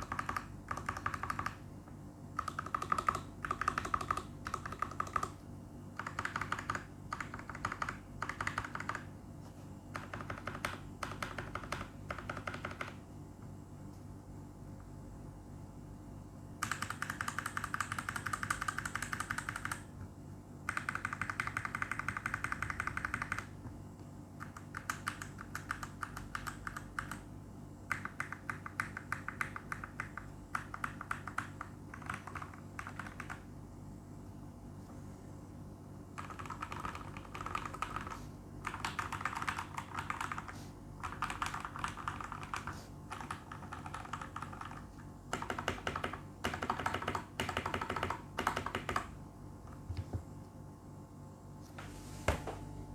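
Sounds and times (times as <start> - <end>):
mechanical keyboard typing: 0.0 - 1.6, 2.4 - 5.4, 6.0 - 9.1, 9.9 - 13.0, 16.6 - 19.9, 20.7 - 23.5, 24.4 - 27.2, 27.9 - 33.5, 36.2 - 49.2.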